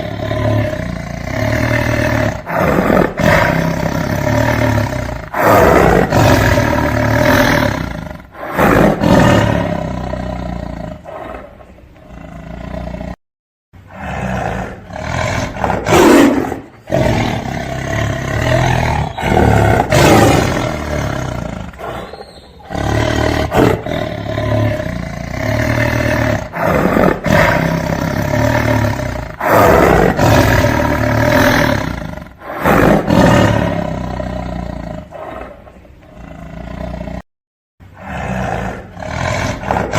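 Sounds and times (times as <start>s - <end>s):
tiger roaring and growling: 0.0s - 13.2s, 13.8s - 37.2s, 37.8s - 39.9s.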